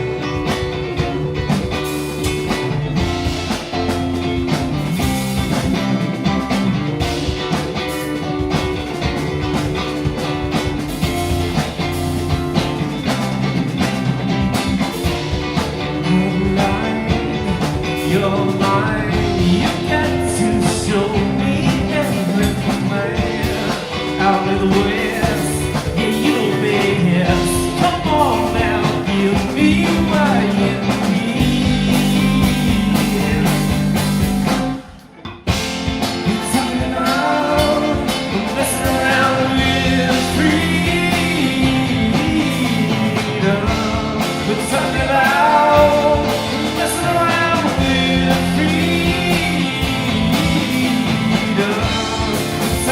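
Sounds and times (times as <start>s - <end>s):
electric guitar: 0.0s - 52.9s
rock band playing: 0.0s - 52.9s
person singing: 15.3s - 34.6s, 36.1s - 52.9s.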